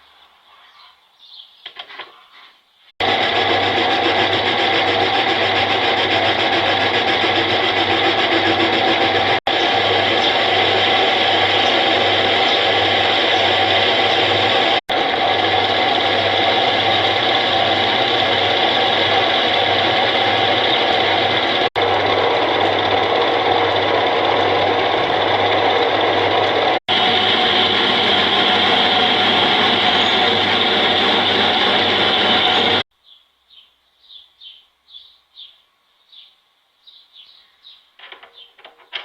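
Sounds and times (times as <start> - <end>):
lathe machine whine: 3.0 - 32.9.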